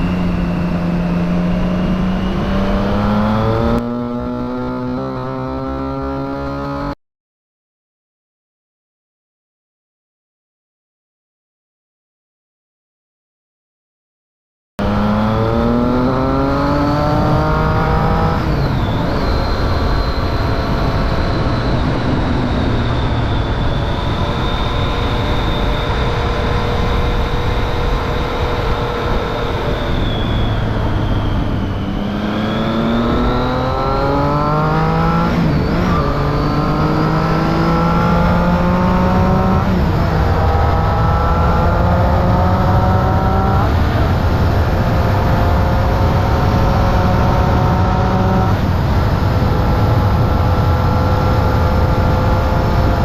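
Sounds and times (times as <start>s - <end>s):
steady high whine: 0.0s - 3.8s, 17.2s - 53.0s
motorcycle engine accelerating: 0.0s - 7.0s, 14.8s - 53.0s.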